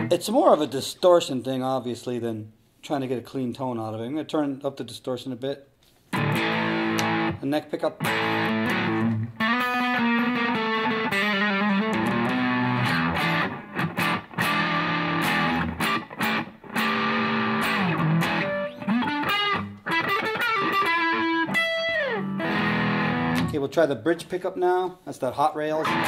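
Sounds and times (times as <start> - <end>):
distorted electric guitar: 6.1 - 7.4, 8.0 - 23.6, 25.8 - 26.0.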